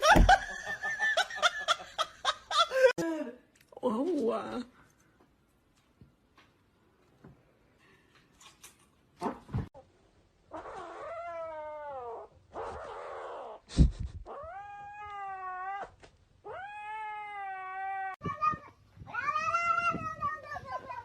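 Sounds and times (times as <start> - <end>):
cat yowling: 14.3 - 21.0.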